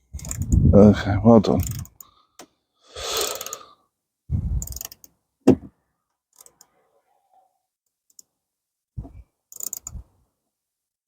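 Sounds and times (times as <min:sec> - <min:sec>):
socket ratchet clicking: 0:03.2 - 0:03.6, 0:04.6 - 0:05.2, 0:09.5 - 0:10.0.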